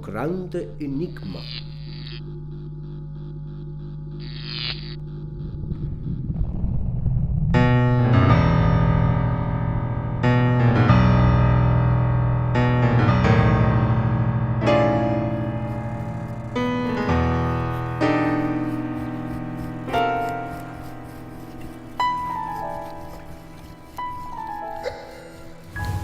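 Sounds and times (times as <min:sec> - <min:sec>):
slow piano chords: 0:07.5 - 0:26.0.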